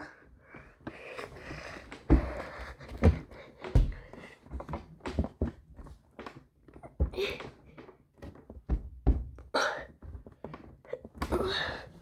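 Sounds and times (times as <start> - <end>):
thumps and knocks: 8.2 - 9.5.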